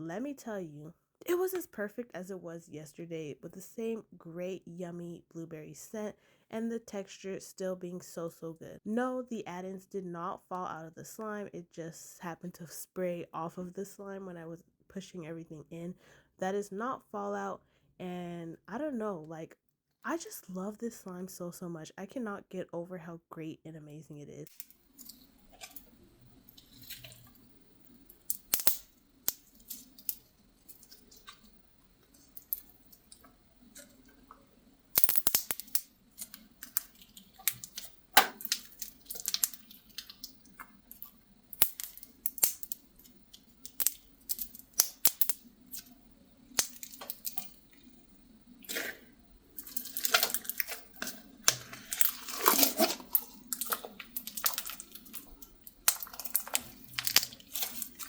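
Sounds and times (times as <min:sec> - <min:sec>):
slime clicking and popping: 0:24.5 - 0:45.9, 0:46.5 - 0:47.8, 0:49.6 - 0:58.0.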